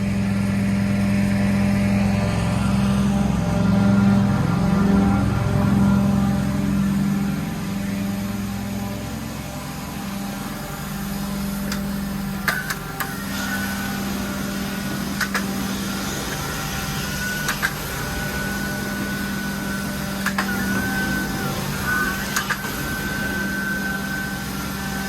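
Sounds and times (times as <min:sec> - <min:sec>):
cleaning machine motor hum: 0:00.0 - 0:25.0
sharp clicks: 0:12.5 - 0:13.2, 0:15.2 - 0:15.6, 0:17.5 - 0:17.9, 0:20.2 - 0:20.6
high whistle: 0:15.9 - 0:25.0.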